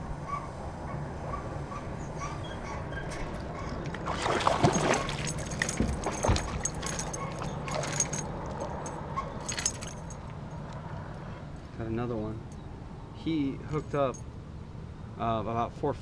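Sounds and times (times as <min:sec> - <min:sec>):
water splashes: 0:03.9 - 0:08.2.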